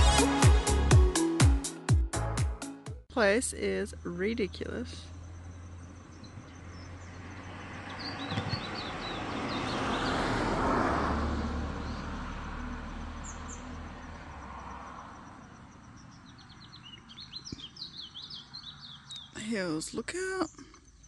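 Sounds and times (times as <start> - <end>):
small birds chirping: 3.2 - 10.2, 13.0 - 14.2, 15.2 - 21.0
vehicle passing by: 5.0 - 19.1.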